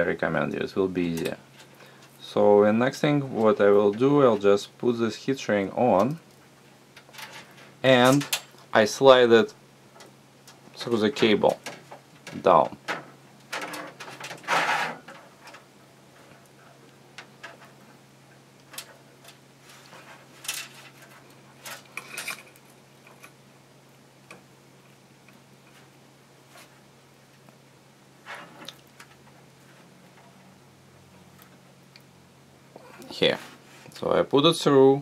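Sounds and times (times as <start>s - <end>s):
steady low hum: 0.0s - 35.0s
tubing clicks and rustles: 9.9s - 23.4s.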